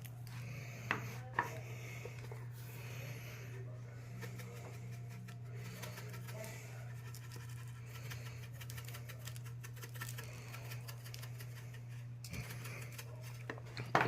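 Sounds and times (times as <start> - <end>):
steady low hum: 0.0 - 14.0
seasoning scratching on steak: 2.9 - 13.6.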